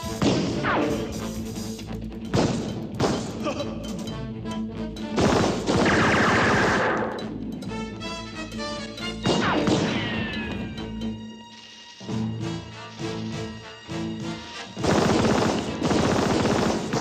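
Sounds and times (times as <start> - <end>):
gunfire: 0.0 - 1.1, 2.3 - 3.4, 5.1 - 7.2, 9.2 - 10.3, 14.8 - 17.0
dramatic background music: 0.0 - 17.0
sharp shots or impacts: 5.2 - 7.2, 9.2 - 10.2.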